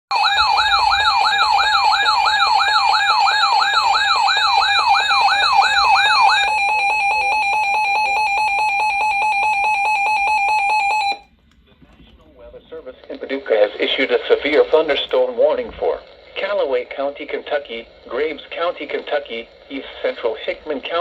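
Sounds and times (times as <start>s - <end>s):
steady alert tone: 0.1s - 11.2s.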